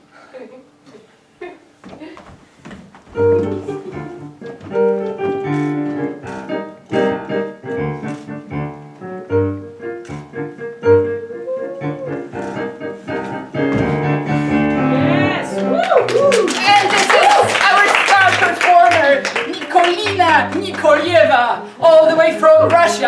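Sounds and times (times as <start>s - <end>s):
piano playing chords: 3.1s - 23.0s.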